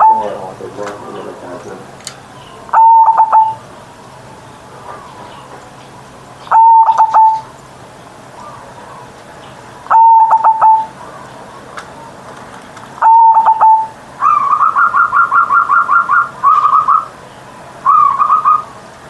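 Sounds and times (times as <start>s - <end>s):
dove cooing: 0.0s - 1.7s, 2.4s - 3.7s, 6.4s - 7.5s, 8.3s - 9.2s, 9.8s - 11.6s, 13.0s - 17.2s, 17.8s - 18.8s.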